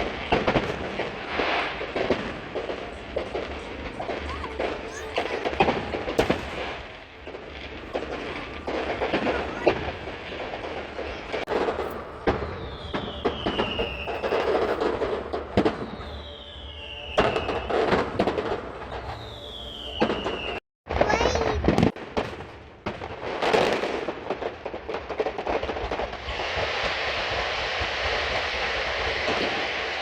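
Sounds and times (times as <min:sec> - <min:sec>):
fireworks bangs and crackles: 0:00.0 - 0:30.0
whistling fireworks: 0:00.0 - 0:30.0.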